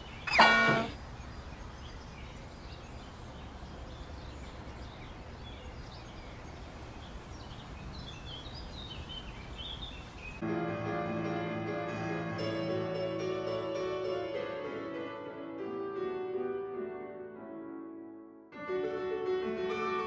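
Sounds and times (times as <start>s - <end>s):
small birds chirping: 0.0s - 10.4s.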